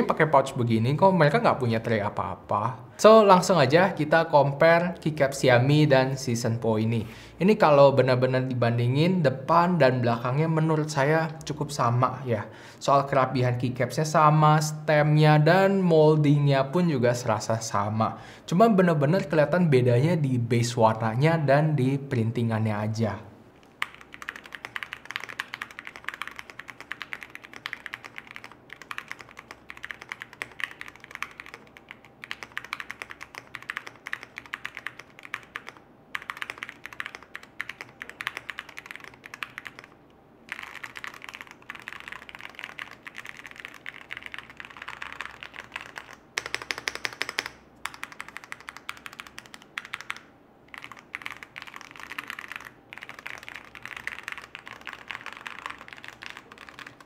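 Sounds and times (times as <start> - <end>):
fast typing on mechanical keyboard: 23.8 - 57.0.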